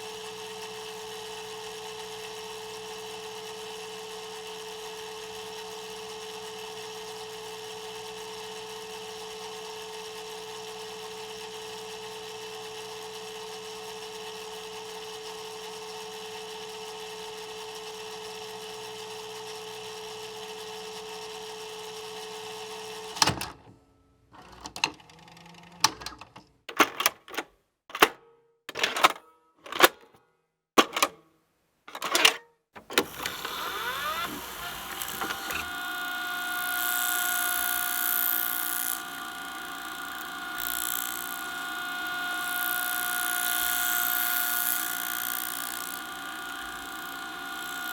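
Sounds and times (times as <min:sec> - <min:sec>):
tape mechanism clicks and clunks: 0:31.9 - 0:47.9
vcr whirring and humming: 0:32.8 - 0:47.9.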